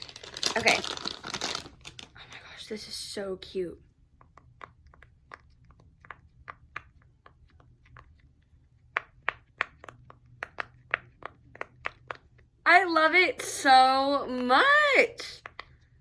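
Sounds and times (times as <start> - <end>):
pop-it fidget bubbles popping: 4.1 - 12.5.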